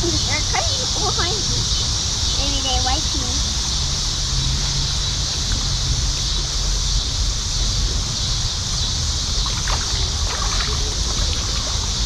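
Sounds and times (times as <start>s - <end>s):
wind rumble on microphone: 0.0s - 12.0s
river water rushing: 9.4s - 12.0s.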